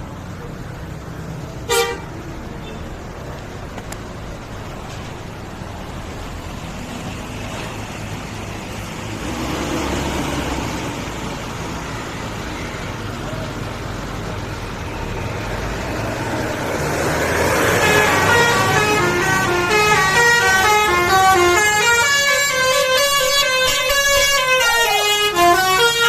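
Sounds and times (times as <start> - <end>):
bus engine rumble: 0.0 - 26.0
bus horn toot: 1.6 - 3.0, 17.8 - 26.0.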